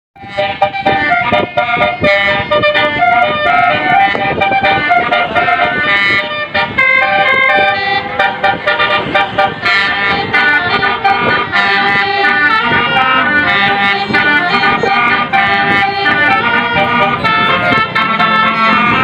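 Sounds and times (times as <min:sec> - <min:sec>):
multi-tone air horn melody: 0:00.2 - 0:19.0.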